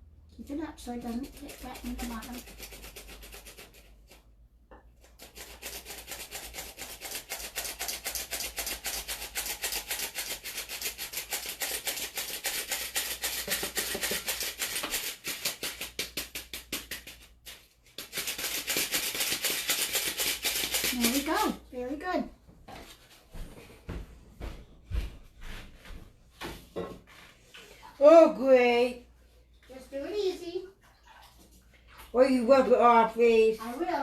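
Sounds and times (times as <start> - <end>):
spoon stirring batter in bowl: 0.7 - 21.4.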